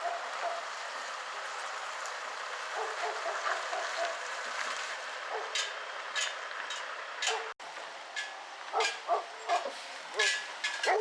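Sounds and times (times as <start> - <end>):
dog barking: 0.0 - 0.6, 2.8 - 4.2, 5.3 - 5.6, 7.2 - 7.5, 8.7 - 11.0.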